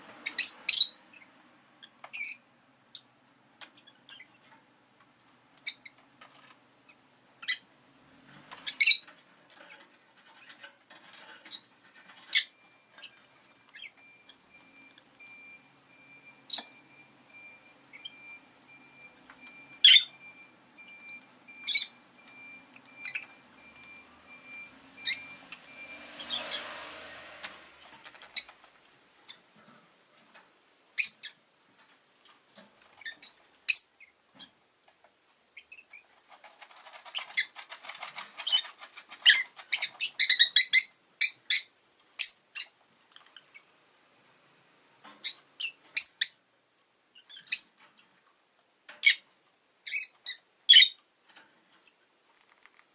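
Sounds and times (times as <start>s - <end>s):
lovebirds chirping: 0.2s - 3.1s, 5.6s - 6.0s, 6.9s - 7.7s, 8.6s - 9.2s, 11.4s - 15.6s, 16.2s - 26.7s, 28.0s - 28.6s, 31.0s - 31.4s, 33.0s - 34.5s, 37.0s - 42.8s, 45.2s - 46.5s, 47.2s - 47.8s, 49.0s - 51.0s
faint steady high tone: 12.2s - 26.3s.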